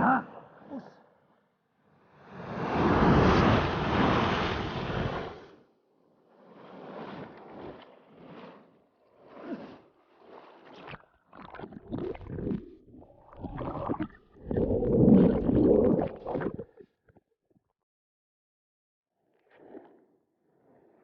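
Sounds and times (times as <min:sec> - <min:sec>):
surf: 0:02.2 - 0:05.6.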